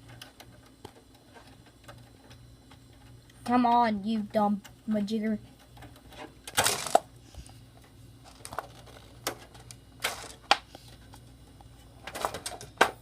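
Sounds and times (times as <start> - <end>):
computer parts clicking and knocking: 5.6 - 7.1, 8.3 - 10.6, 12.0 - 13.0.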